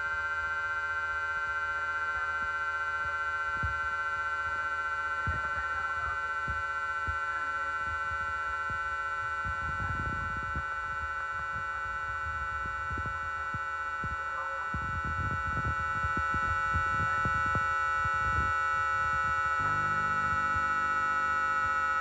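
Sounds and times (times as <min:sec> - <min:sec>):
electric train motor whine: 0:00.0 - 0:22.0
low rumble: 0:19.6 - 0:22.0.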